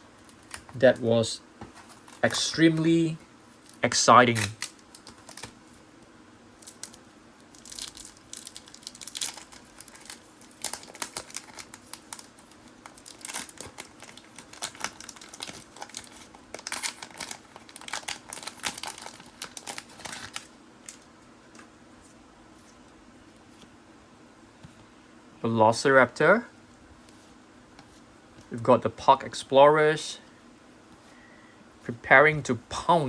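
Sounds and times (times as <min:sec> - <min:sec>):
cards being handled: 0:01.6 - 0:03.0
wrapper tearing and crinkling: 0:03.6 - 0:05.6, 0:06.6 - 0:21.0.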